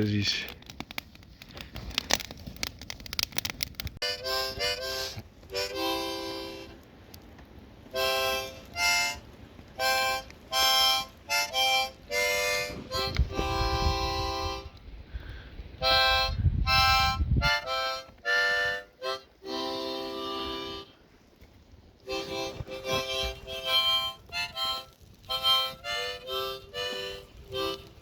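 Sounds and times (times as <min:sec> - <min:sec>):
harmonica playing notes: 0:04.0 - 0:06.8, 0:07.9 - 0:14.8, 0:15.8 - 0:21.0, 0:22.1 - 0:28.0.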